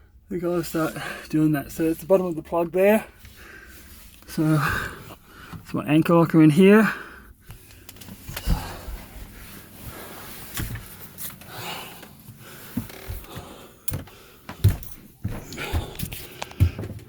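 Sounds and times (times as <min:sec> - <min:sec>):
soft scuffs: 0:12.2 - 0:17.0.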